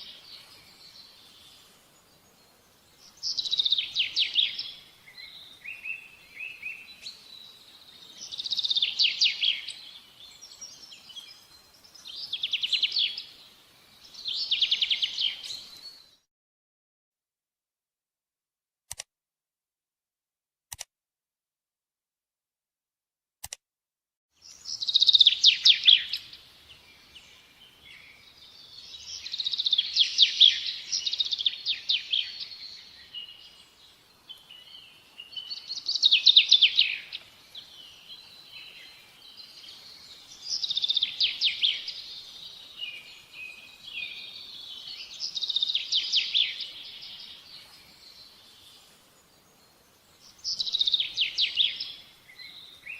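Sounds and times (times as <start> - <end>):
short clicks: 18.9 - 19.1, 20.7 - 20.9, 23.4 - 23.6.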